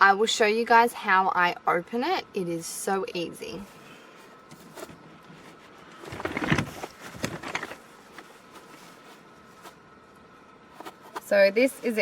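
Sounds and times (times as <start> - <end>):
pram rustling and scraping: 4.2 - 12.0.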